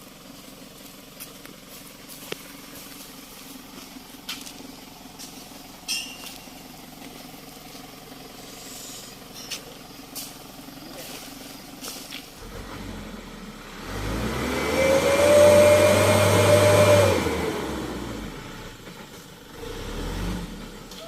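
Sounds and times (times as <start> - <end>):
truck engine idling: 0.0 - 21.0
sharp knocks and clinks: 5.9 - 6.5.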